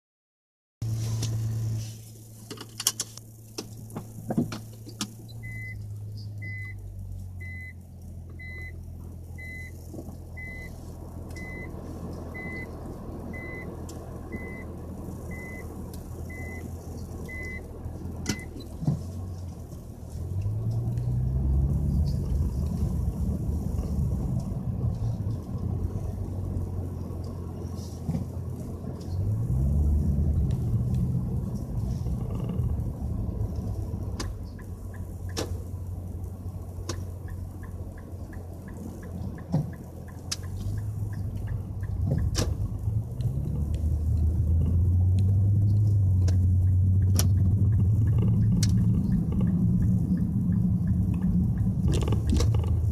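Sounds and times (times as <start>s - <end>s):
car engine idling and accelerating: 0.8s - 52.9s
in-car warning beep: 5.3s - 8.8s, 9.4s - 9.8s, 10.4s - 16.7s, 17.3s - 17.7s, 18.3s - 18.7s.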